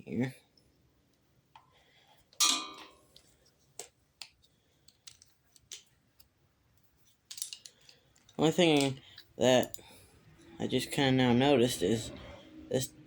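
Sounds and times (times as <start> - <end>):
light clicks and taps of parts: 3.1 - 10.0.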